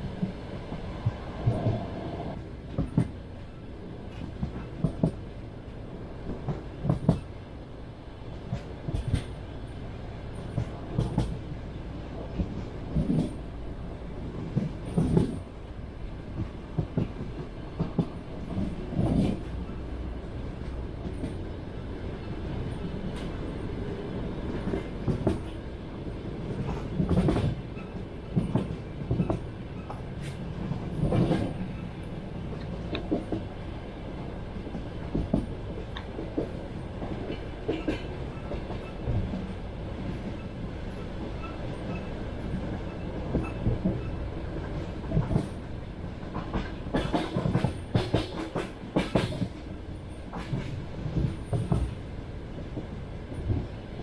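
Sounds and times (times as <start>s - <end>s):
train wheels clattering over rail joints: 2.7s - 3.2s, 4.1s - 5.3s, 6.3s - 7.3s, 8.4s - 9.4s, 10.4s - 11.6s, 12.3s - 13.5s, 14.3s - 15.6s, 16.4s - 19.8s, 24.6s - 25.6s, 26.5s - 33.6s, 34.6s - 52.1s.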